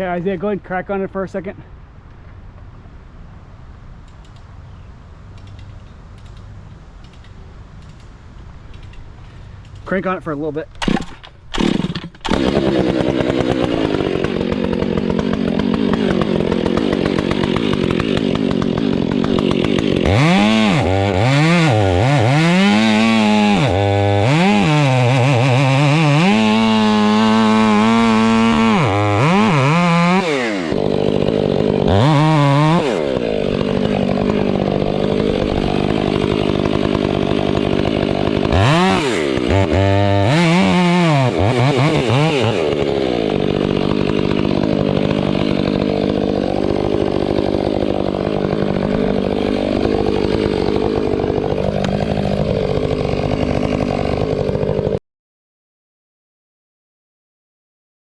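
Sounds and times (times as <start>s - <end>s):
chainsaw cutting wood: 10.8s - 55.0s.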